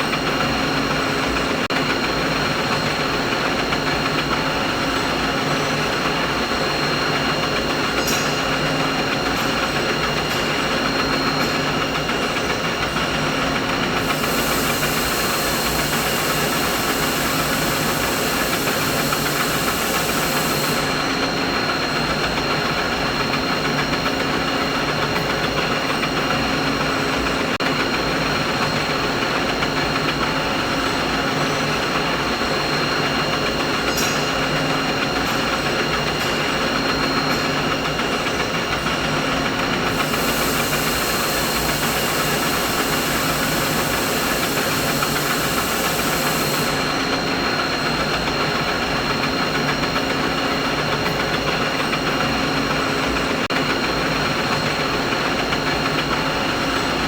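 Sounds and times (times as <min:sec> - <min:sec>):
machine hum with whining tones: 0:00.0 - 0:57.0
high hiss: 0:14.0 - 0:21.0, 0:39.9 - 0:47.1.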